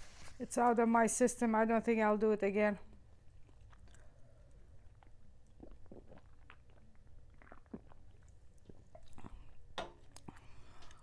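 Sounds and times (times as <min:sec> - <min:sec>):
person chewing: 0:03.3 - 0:11.0.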